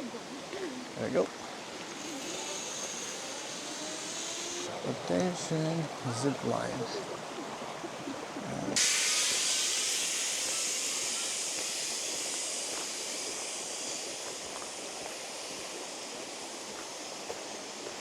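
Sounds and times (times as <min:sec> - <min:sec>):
zip-line trolley hissing on cable: 0:01.6 - 0:04.8, 0:08.8 - 0:18.0.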